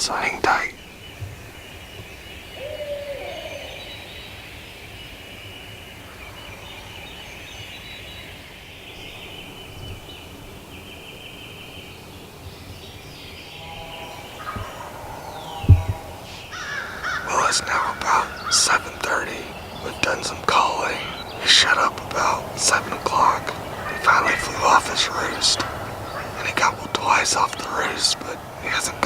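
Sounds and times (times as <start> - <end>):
birds calling: 0.0 - 29.0
distant turkey gobble: 13.6 - 29.0.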